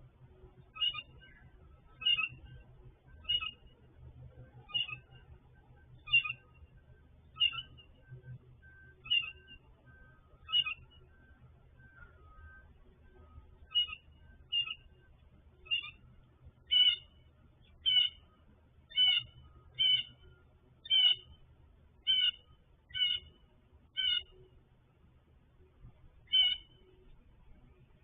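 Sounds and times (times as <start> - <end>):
bird calling: 0.7 - 2.6, 3.2 - 3.7, 4.6 - 5.3, 6.0 - 6.6, 7.4 - 7.9, 8.9 - 9.7, 10.4 - 11.1, 13.6 - 14.9, 15.6 - 16.0, 16.6 - 18.3, 18.9 - 21.4, 22.0 - 24.4, 26.3 - 27.0.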